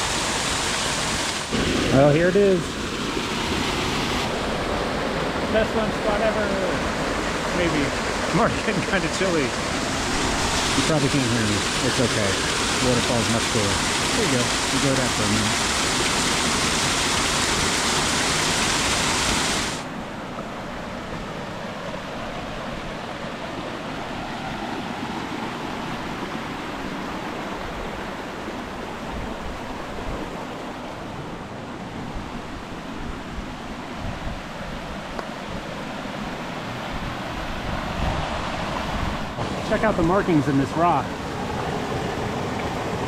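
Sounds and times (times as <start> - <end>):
small waterfall rushing and splashing: 0.0 - 43.0.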